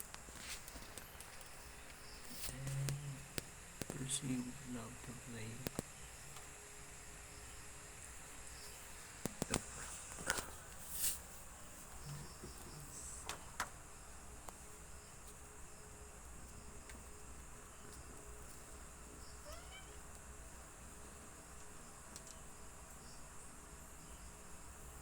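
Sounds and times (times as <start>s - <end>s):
night insects chirring: 0.0s - 25.0s
sharp clicks: 5.6s - 6.5s.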